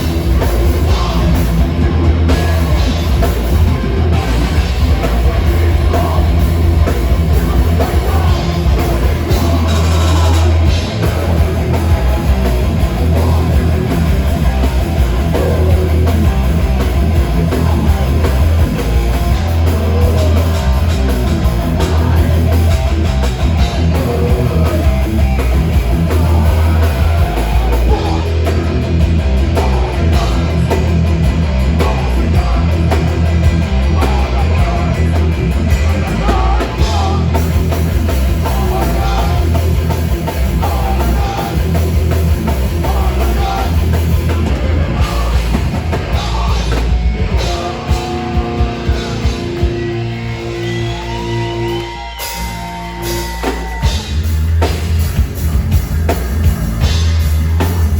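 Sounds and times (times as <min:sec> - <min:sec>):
person singing: 0:00.0 - 0:54.0
bass guitar: 0:00.0 - 0:57.9
distorted electric guitars: 0:00.0 - 0:57.9
drum kit: 0:00.0 - 0:57.9.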